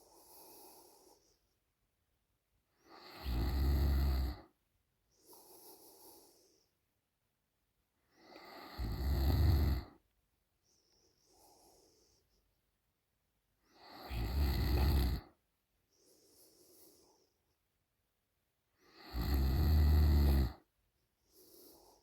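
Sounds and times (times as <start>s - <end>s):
soft breath out: 0.0s - 1.6s, 5.1s - 6.8s, 10.6s - 12.5s, 15.8s - 17.6s, 21.2s - 22.0s
woman snoring: 2.8s - 4.5s, 8.2s - 10.0s, 13.7s - 15.4s, 18.8s - 20.7s.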